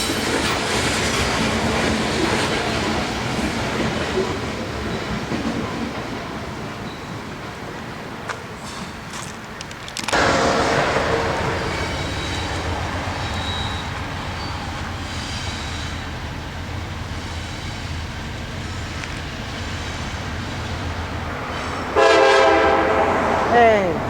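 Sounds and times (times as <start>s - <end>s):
freight train rumbling past: 0.0s - 24.0s
faint high squeals: 10.5s - 18.1s.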